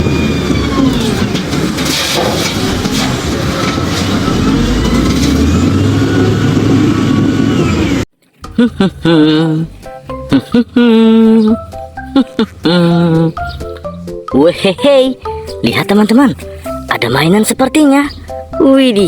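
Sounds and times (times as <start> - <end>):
vehicle engine revving: 0.0 - 8.1.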